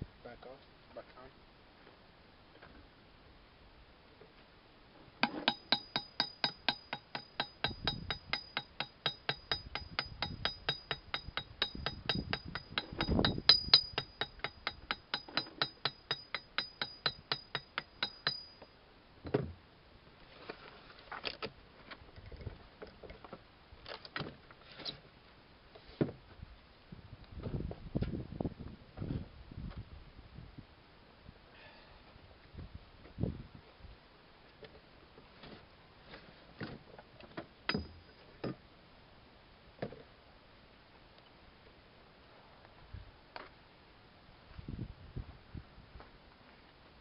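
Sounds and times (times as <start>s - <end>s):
knocks and clinks: 5.2s - 18.7s, 37.7s - 38.6s
ringing metallic clicks: 5.2s - 18.7s.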